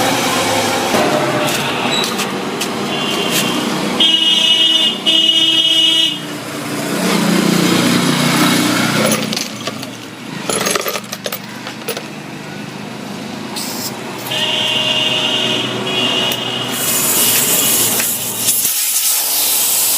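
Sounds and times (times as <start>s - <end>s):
road traffic: 0.0s - 19.9s
vehicle horn honking: 1.0s - 2.2s, 2.8s - 6.3s, 14.2s - 18.2s
rumble of passing vehicle: 6.2s - 11.2s.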